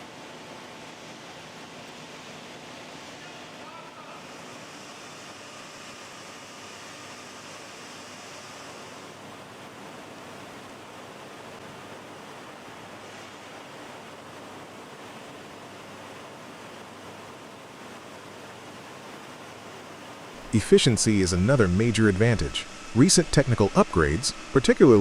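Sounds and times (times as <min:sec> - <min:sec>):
steady rushing noise: 0:20.4 - 0:25.0.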